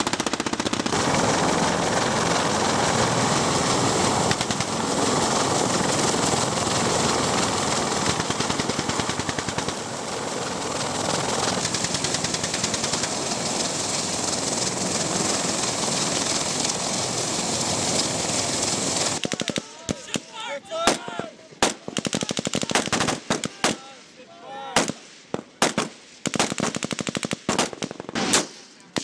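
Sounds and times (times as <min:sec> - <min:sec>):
machine-gun fire: 0:00.0 - 0:10.0, 0:10.9 - 0:13.8, 0:19.1 - 0:20.2, 0:21.6 - 0:23.8, 0:25.6 - 0:29.0
helicopter noise: 0:00.0 - 0:19.8.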